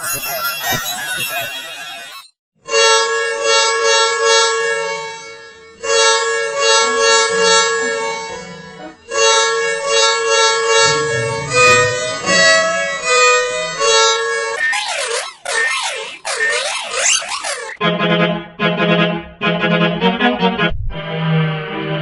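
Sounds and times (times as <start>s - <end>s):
bus horn blasts: 5.8s - 14.3s
low rumble: 10.8s - 13.6s, 20.6s - 21.0s.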